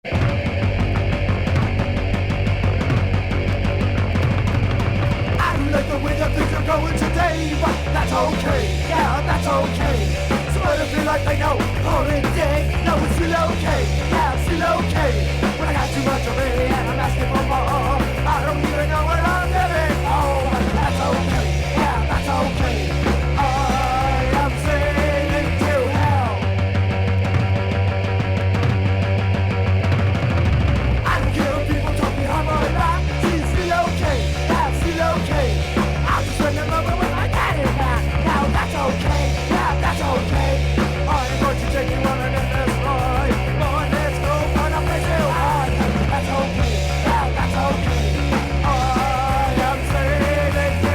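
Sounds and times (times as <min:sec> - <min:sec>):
punk rock band playing: 0:00.0 - 0:50.9
person singing: 0:31.1 - 0:50.9.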